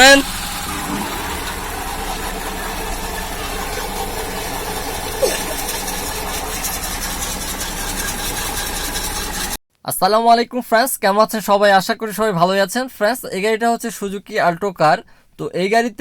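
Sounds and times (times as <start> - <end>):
car engine idling: 0.0 - 9.6.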